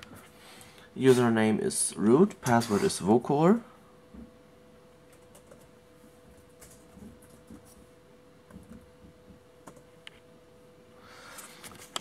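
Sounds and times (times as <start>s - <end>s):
faint steady hum: 0.0s - 12.0s
typing on laptop keyboard: 5.1s - 5.7s, 6.6s - 7.7s, 9.6s - 9.9s.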